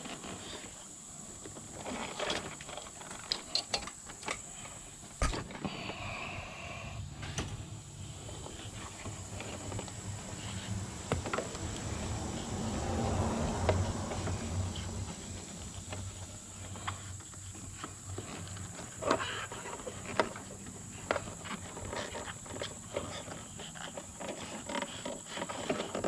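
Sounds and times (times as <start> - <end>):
clicks and knocks: 7.2 - 7.8.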